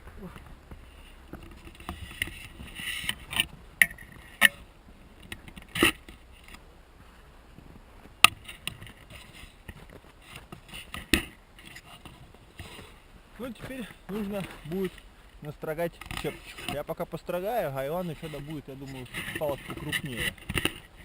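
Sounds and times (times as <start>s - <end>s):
rustling: 0.0s - 21.0s.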